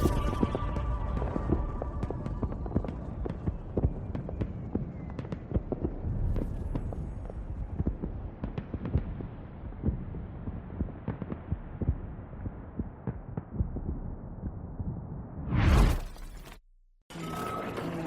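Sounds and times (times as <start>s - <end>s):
steady low rumble: 0.0s - 4.1s.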